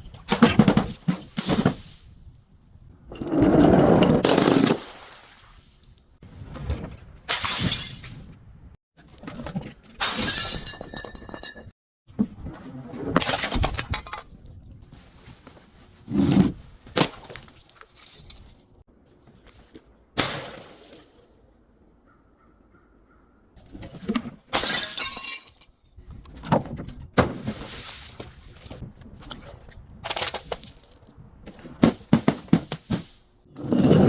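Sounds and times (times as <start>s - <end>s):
glass bottles smashing: 4.2s - 5.4s, 7.3s - 8.3s, 10.0s - 11.7s, 24.5s - 25.8s.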